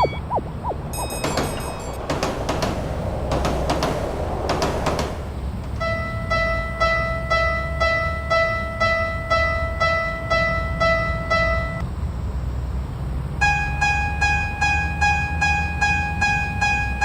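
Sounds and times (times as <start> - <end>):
level-crossing alarm dinging: 0.0 - 2.0
low steady rumble: 0.0 - 6.5.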